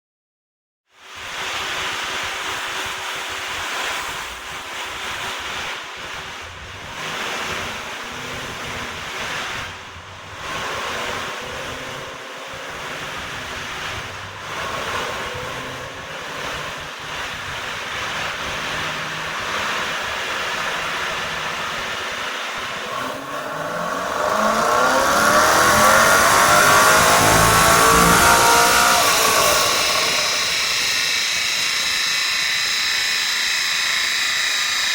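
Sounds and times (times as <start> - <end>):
steady rushing noise: 1.0 - 34.9
car engine on dyno: 1.3 - 34.9.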